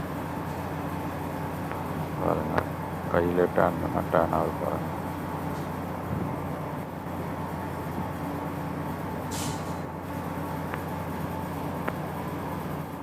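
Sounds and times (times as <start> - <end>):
low mechanical drone: 0.0 - 13.0
brief hiss: 9.3 - 9.8.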